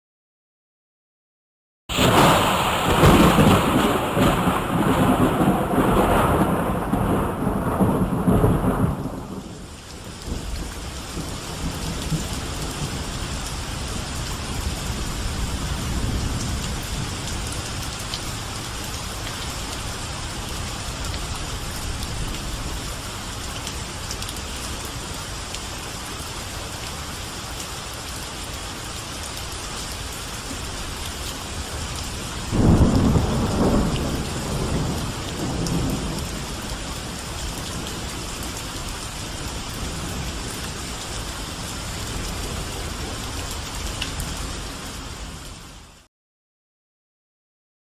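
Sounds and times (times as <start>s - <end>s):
thunder rolling: 1.9s - 9.7s, 32.5s - 37.2s
heavy rain: 1.9s - 46.1s.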